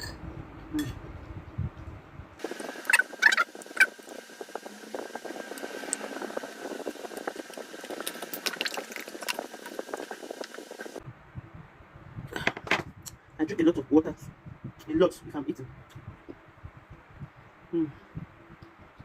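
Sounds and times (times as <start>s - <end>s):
faint steady hum: 0.0s - 19.0s
eating clicks and mouth noises: 2.7s - 11.0s.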